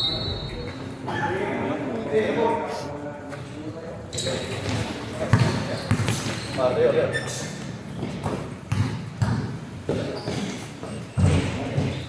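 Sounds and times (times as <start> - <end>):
basketball bouncing indoors: 4.7 - 6.5, 8.0 - 12.0.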